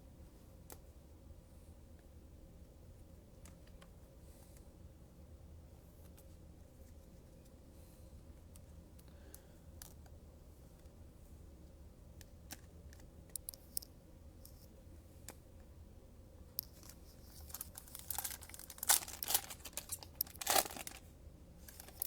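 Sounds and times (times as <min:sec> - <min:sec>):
card pack wrapper tearing: 0:16.8 - 0:21.0, 0:21.7 - 0:22.0
wrapper crinkling: 0:16.8 - 0:21.1, 0:21.7 - 0:22.0.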